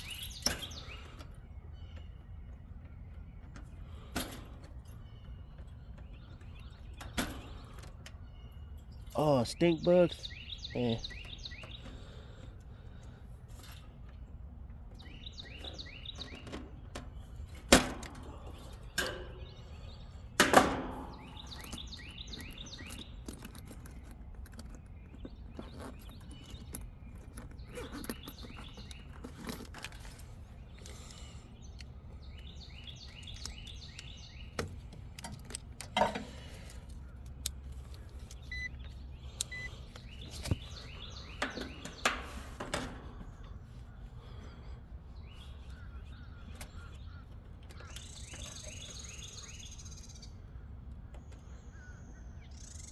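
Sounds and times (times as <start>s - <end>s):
songbird singing: 0.0s - 52.9s
metallic knocks and clatters: 35.2s - 36.5s.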